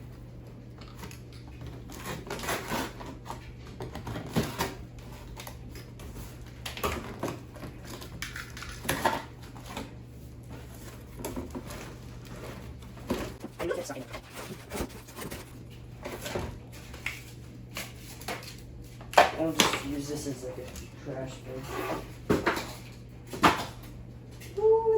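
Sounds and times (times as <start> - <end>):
steady low hum: 13.2 - 15.8
packaging being handled: 13.4 - 15.6.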